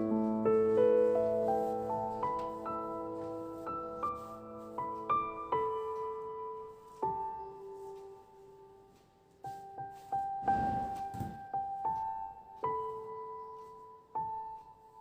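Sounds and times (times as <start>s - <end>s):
slow solo piano: 0.0s - 15.0s.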